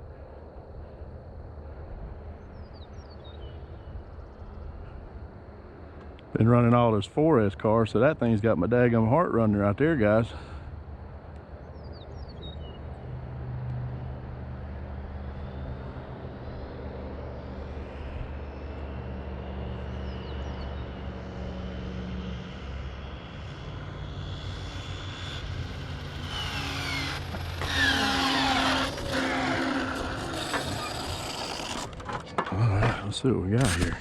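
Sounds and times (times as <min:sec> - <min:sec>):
steady low hum: 0:00.0 - 0:34.0
rc car electric motor whining: 0:23.7 - 0:32.6.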